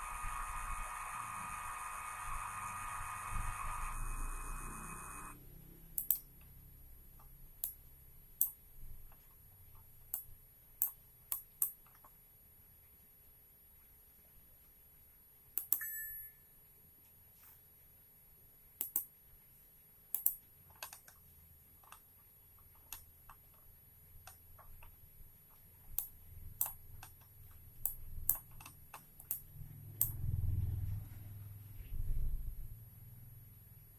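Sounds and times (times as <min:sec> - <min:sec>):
low rumble: 0:30.1 - 0:32.8.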